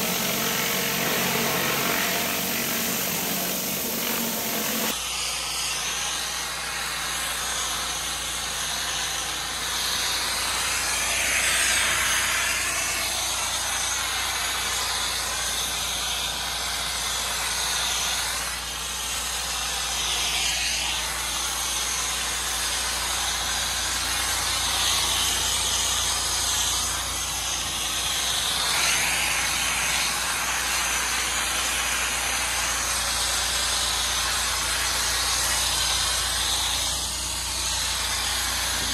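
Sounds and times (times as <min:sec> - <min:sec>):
engine humming: 0:00.0 - 0:05.0
pressure washer water jet hissing: 0:00.0 - 0:38.9.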